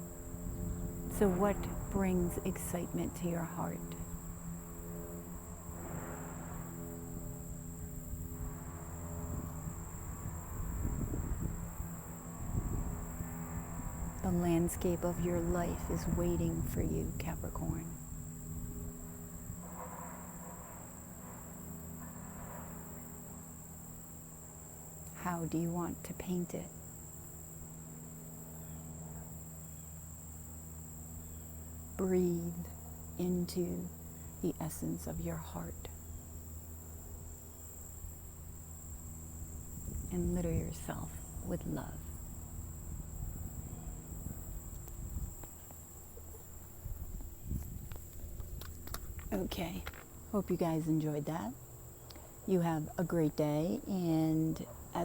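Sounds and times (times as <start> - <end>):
low rumble: 0.0 - 24.1
crickets trilling: 0.0 - 55.0
low steady hum: 0.0 - 55.0.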